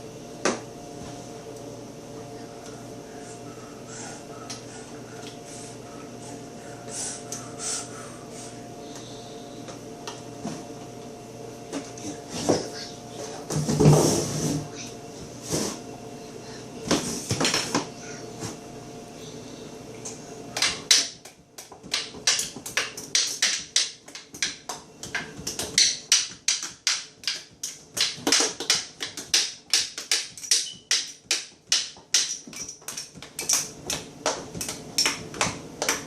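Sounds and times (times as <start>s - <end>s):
toddler drumming on a refrigerator: 11.8s - 14.8s, 20.5s - 36.0s.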